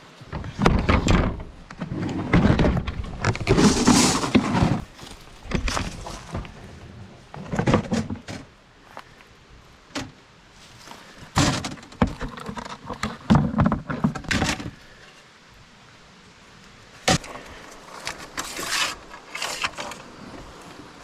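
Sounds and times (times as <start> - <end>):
door or lid thunking shut: 9.9 - 10.2, 11.4 - 12.2
hard objects knocking and clattering: 11.3 - 14.8.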